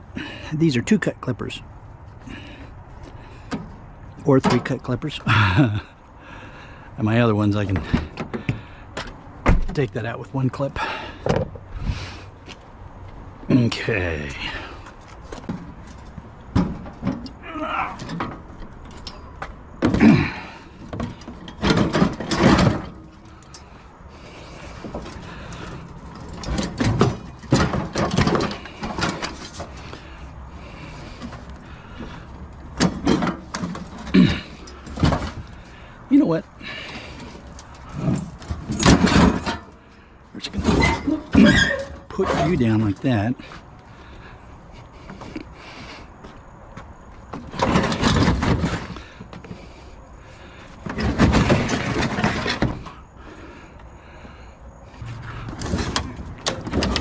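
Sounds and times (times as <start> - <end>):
scrap metal clanking: 17.9 - 35.9, 36.6 - 43.2, 47.3 - 53.5, 54.9 - 57.0
steady low hum: 52.8 - 57.0.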